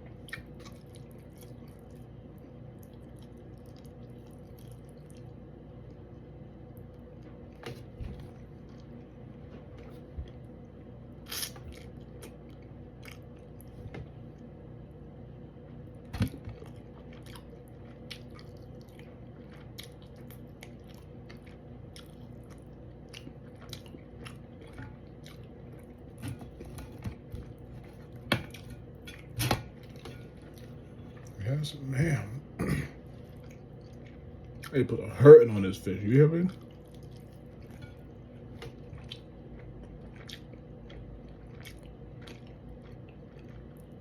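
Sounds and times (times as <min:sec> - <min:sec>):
chewing and biting fish: 0:38.9 - 0:44.0.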